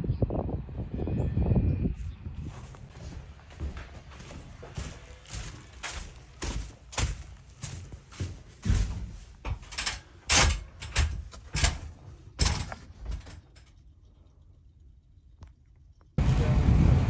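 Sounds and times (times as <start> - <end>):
knocks and thuds: 6.4 - 13.4.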